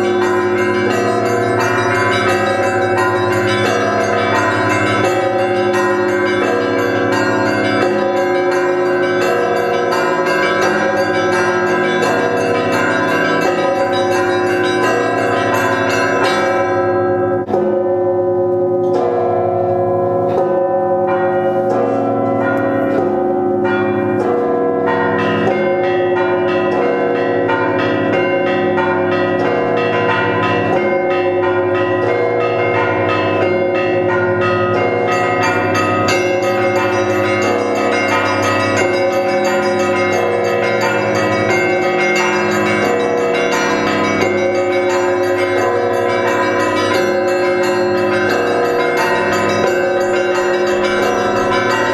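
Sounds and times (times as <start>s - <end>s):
hum of large bells: 0.0s - 51.9s
small high bells struck rapidly: 34.4s - 51.9s.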